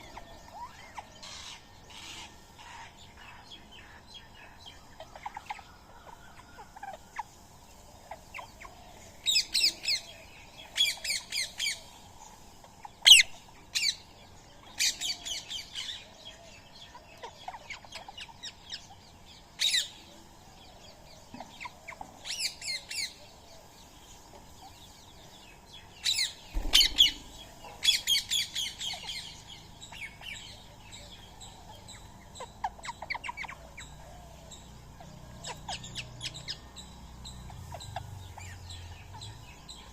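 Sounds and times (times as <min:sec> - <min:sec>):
parakeets squawking: 0:26.6 - 0:29.3.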